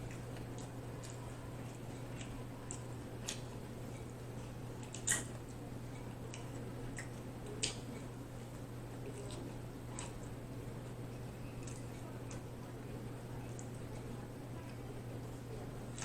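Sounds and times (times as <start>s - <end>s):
man chewing food: 0.0s - 12.6s.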